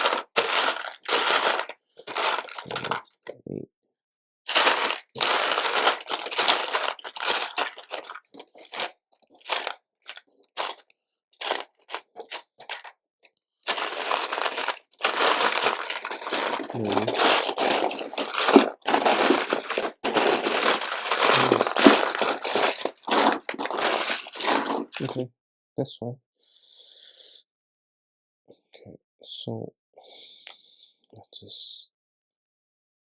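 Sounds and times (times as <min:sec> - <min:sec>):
plastic bricks rattling: 0:00.0 - 0:03.0, 0:04.5 - 0:10.8, 0:11.4 - 0:12.9, 0:13.7 - 0:25.2.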